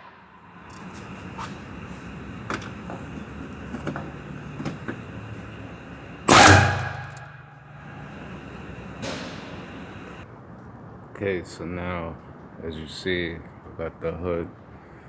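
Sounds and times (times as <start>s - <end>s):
light clicks and knocks: 0.7s - 5.5s
loud metallic bang: 6.3s - 7.9s.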